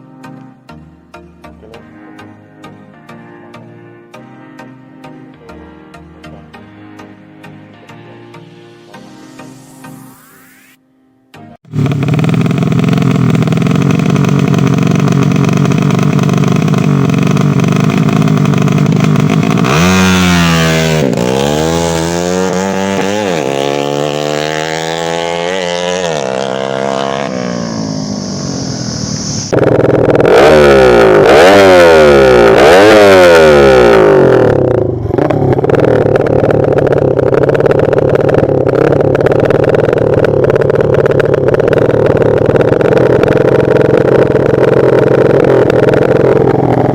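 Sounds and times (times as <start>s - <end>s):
motorcycle engine idling and revving: 11.7s - 46.9s.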